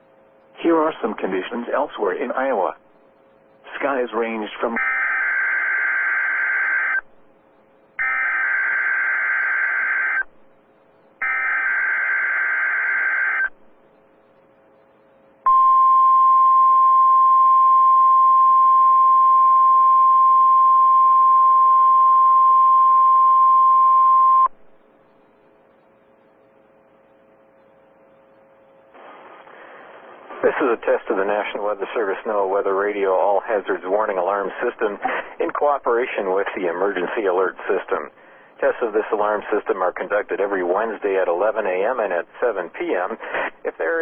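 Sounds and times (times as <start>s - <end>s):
harsh buzzing data bursts: 4.8s - 7.0s, 8.0s - 10.2s, 11.2s - 13.5s
steady high warning beep: 8.0s - 10.3s, 11.2s - 13.5s, 15.5s - 24.5s.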